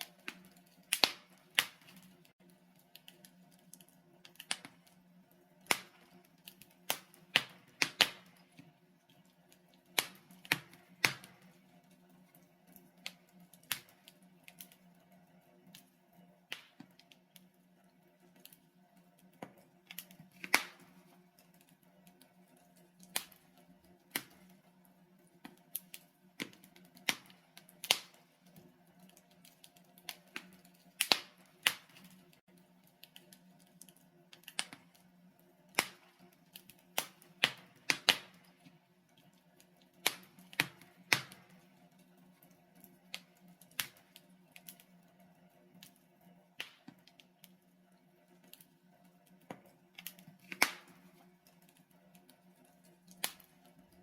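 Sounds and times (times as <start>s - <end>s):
logs crackling and popping: 0.0s - 54.0s.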